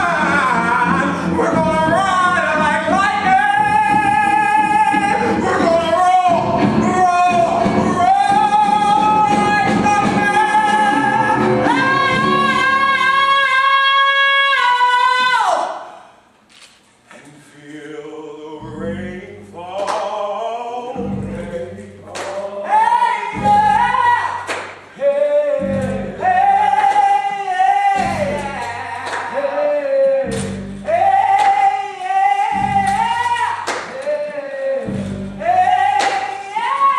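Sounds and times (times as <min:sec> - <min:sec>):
band accompaniment: 0:00.0 - 0:13.4, 0:21.0 - 0:25.0, 0:27.9 - 0:34.2, 0:34.8 - 0:36.9
gospel singing: 0:00.0 - 0:16.2, 0:17.1 - 0:36.9.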